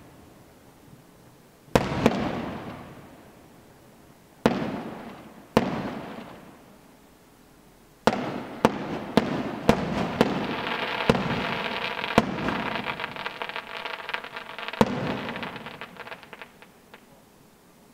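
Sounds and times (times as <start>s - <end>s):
firework bangs: 1.7s - 3.1s, 4.4s - 6.5s, 8.0s - 17.1s
firework crackle: 1.7s - 3.5s, 4.4s - 6.7s, 8.0s - 17.2s.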